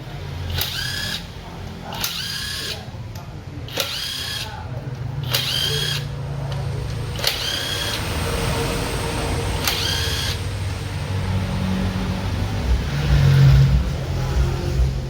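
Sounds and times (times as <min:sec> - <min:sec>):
power tool whirring: 0:00.5 - 0:02.9, 0:03.7 - 0:10.8.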